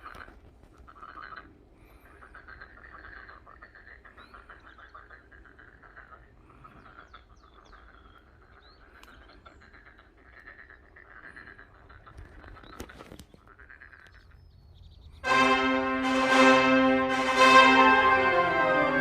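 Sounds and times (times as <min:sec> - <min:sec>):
frogs calling in trills: 0:00.9 - 0:12.6.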